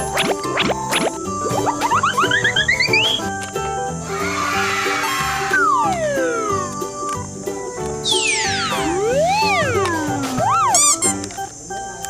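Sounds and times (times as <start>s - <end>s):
upbeat children's music: 0.0s - 12.0s
hissy wavering sound effect: 4.0s - 7.0s, 8.1s - 11.2s.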